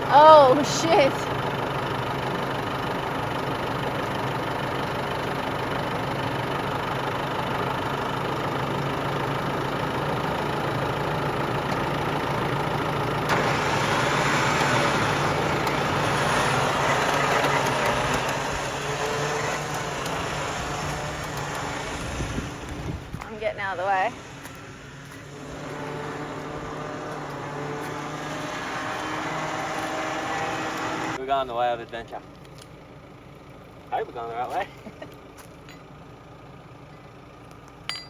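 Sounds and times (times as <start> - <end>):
vehicle engine running: 0.0 - 38.0.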